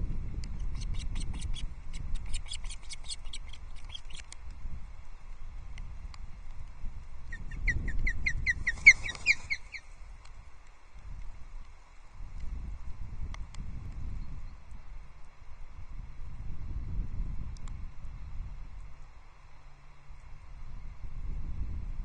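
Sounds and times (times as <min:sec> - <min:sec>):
osprey alarm calls: 0:00.8 - 0:04.3, 0:07.3 - 0:10.0.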